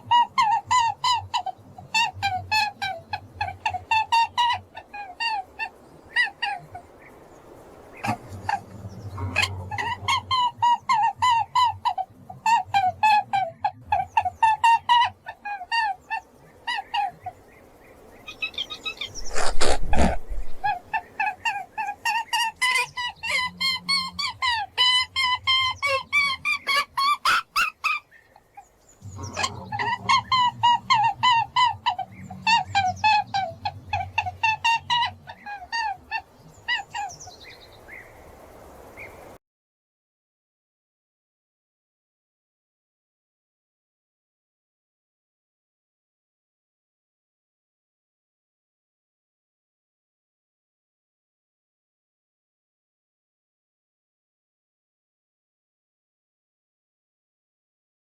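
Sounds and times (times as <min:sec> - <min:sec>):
small animal chirping calls: 0:18.2 - 0:24.3
animal honking calls: 0:19.0 - 0:20.8, 0:29.1 - 0:35.8.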